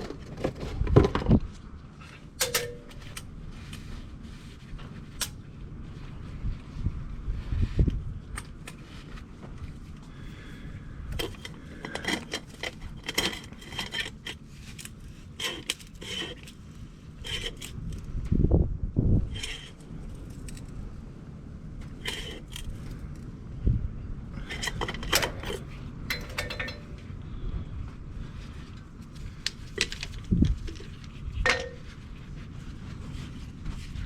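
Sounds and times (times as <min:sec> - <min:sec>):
metal tools clinking and scraping: 0:02.4 - 0:03.3, 0:24.4 - 0:27.2, 0:29.8 - 0:32.0.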